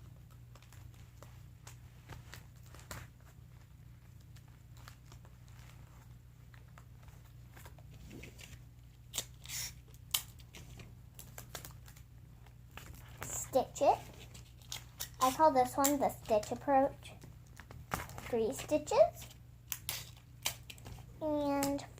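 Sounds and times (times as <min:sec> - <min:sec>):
crinkling and tapping: 0:00.0 - 0:09.0, 0:09.8 - 0:21.9
sticky tape tearing: 0:09.1 - 0:10.6, 0:13.8 - 0:16.5, 0:19.6 - 0:20.9.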